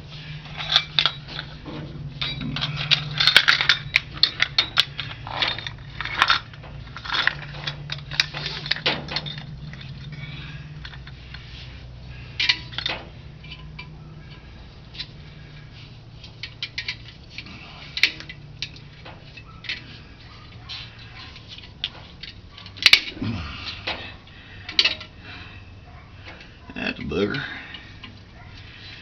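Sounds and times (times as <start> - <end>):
steady low hum: 0.0 - 29.0
pliers clinking against metal: 0.5 - 11.2, 24.6 - 25.2.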